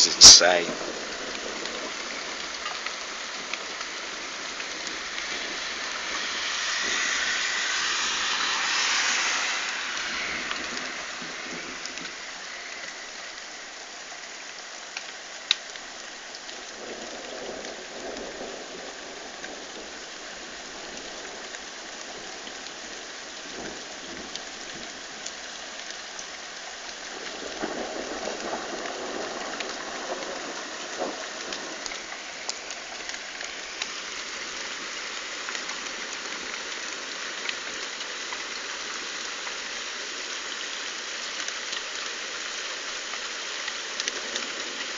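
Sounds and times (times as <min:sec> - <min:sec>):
hail impact ticks: 0:00.0 - 0:06.2, 0:14.8 - 0:18.4, 0:23.6 - 0:39.6, 0:40.4 - 0:44.9
thunder rumbling: 0:00.0 - 0:13.8
heavy rain and hail: 0:00.0 - 0:44.9.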